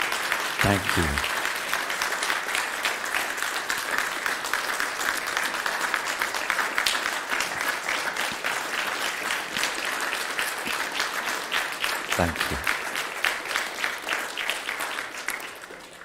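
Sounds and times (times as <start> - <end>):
congregation applauding: 0.0 - 16.0.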